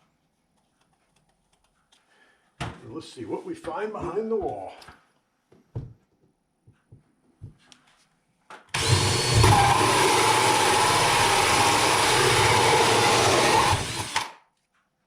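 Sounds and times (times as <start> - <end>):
electric drill boring through wall: 8.7 - 14.4.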